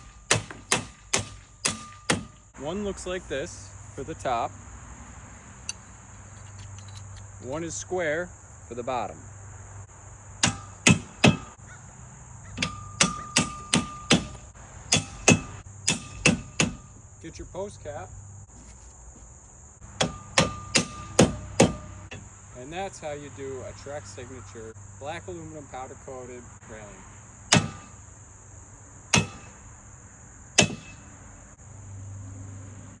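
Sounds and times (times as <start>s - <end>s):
hammer striking metal railing: 0.0s - 2.4s, 10.4s - 11.6s, 12.6s - 16.9s, 20.0s - 22.1s, 27.5s - 28.0s, 29.1s - 29.5s, 30.6s - 31.0s.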